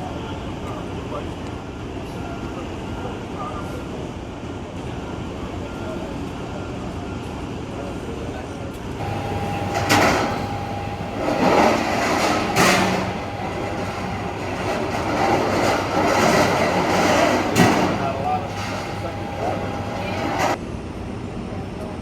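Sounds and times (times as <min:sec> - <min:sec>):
sharp bangs: 0:09.0 - 0:20.6.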